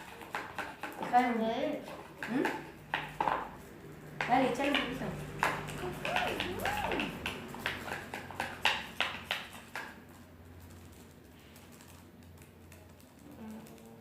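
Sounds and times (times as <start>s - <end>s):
plastic pot tapping and clicking: 2.2s - 3.4s, 4.2s - 10.0s.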